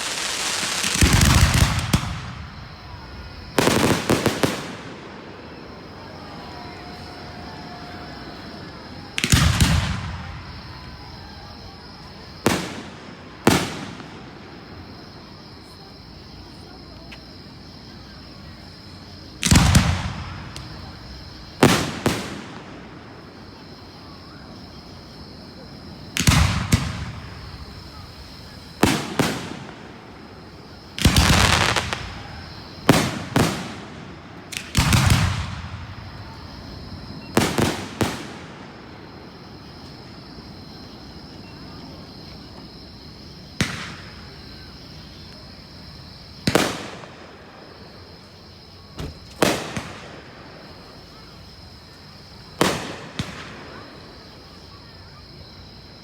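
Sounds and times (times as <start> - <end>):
fireworks booming: 0.0 - 15.1, 19.4 - 23.8, 24.4 - 45.3, 46.1 - 48.3, 48.9 - 51.2, 52.3 - 54.4.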